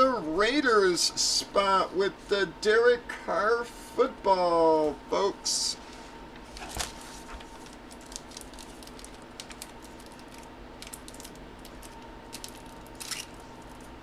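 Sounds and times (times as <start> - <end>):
faint steady hum: 0.0 - 14.0
cards and packaging rustling: 6.4 - 13.9.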